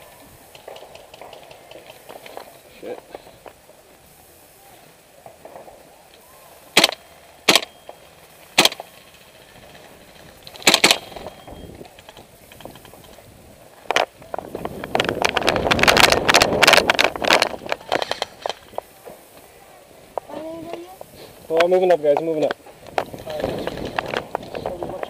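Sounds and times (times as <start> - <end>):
airsoft gun shots: 6.7 - 7.8, 8.5 - 8.9, 10.6 - 11.3.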